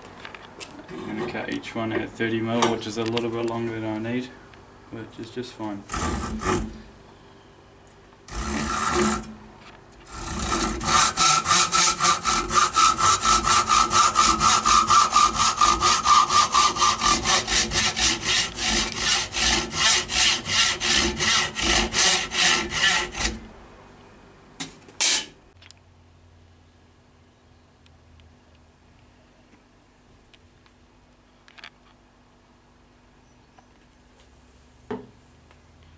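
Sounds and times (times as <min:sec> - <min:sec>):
hand saw cutting wood: 0:05.8 - 0:06.9, 0:08.3 - 0:23.5, 0:25.0 - 0:25.4.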